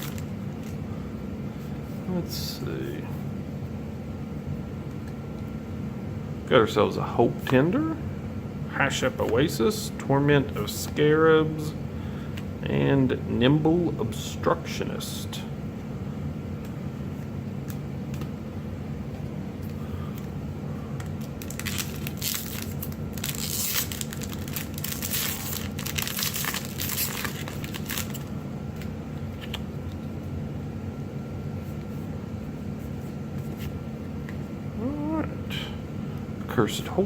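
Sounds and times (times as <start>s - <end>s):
wrapper crinkling and tearing: 0.0s - 0.8s, 21.0s - 28.3s
steady low hum: 0.0s - 37.0s.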